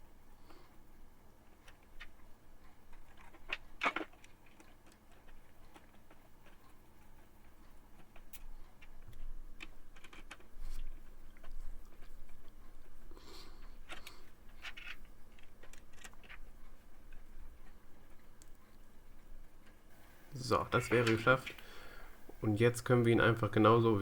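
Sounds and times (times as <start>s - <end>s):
plastic parts clicking and scraping: 1.5s - 7.2s, 8.0s - 12.6s, 13.6s - 17.8s.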